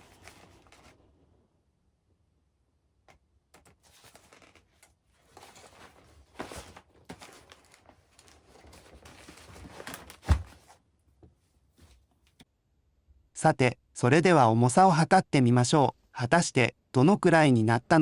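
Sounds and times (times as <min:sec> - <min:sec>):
nylon backpack rustling: 0:05.2 - 0:10.7
backpack thump on ground: 0:10.2 - 0:10.6.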